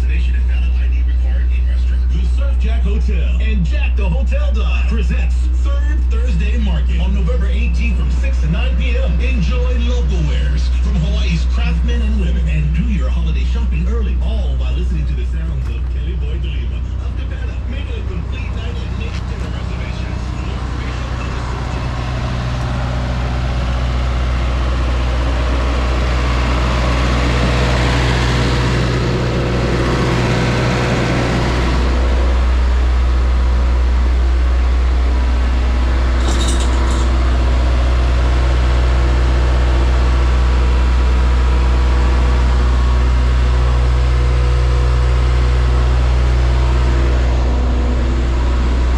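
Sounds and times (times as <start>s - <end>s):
engine humming: 7.0s - 32.8s.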